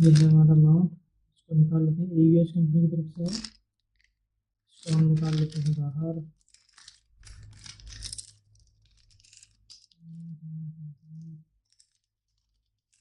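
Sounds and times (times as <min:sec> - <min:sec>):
plastic packaging rustling: 0:04.8 - 0:10.1.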